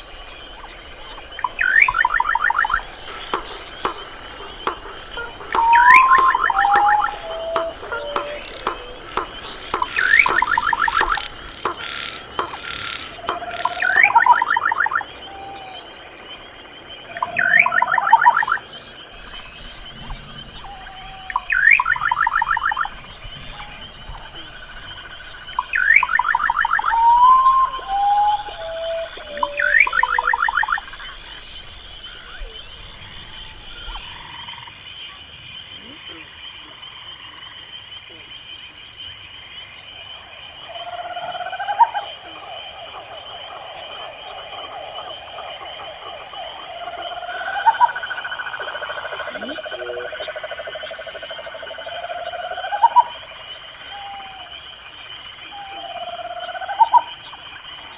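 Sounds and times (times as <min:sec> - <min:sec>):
crickets trilling: 0:00.0 - 0:57.9
night animal pulsed rattle call: 0:00.0 - 0:57.9.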